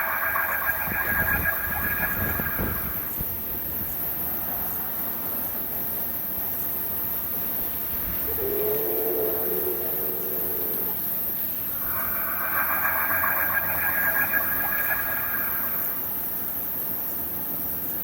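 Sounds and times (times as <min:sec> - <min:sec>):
high rapidly pulsing sound: 0:00.0 - 0:03.3, 0:10.9 - 0:16.6
low snore-like tone: 0:11.8 - 0:16.1.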